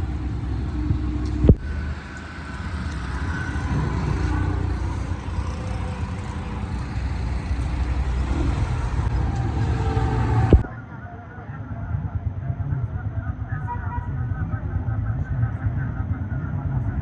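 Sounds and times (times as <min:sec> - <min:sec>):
street traffic rumble: 0:00.0 - 0:10.8.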